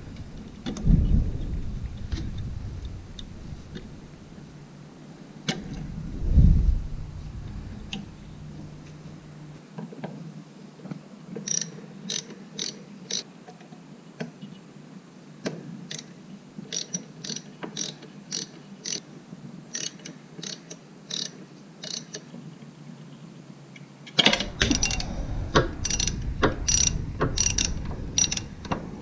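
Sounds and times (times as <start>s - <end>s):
ratchet wrench clicking: 11.5s - 13.2s, 15.9s - 16.1s, 16.7s - 19.0s, 19.7s - 22.3s, 24.6s - 25.1s, 25.8s - 28.5s.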